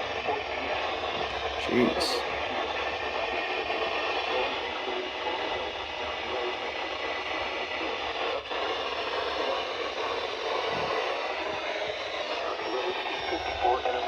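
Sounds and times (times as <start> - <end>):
radio static hiss: 0.0 - 14.0.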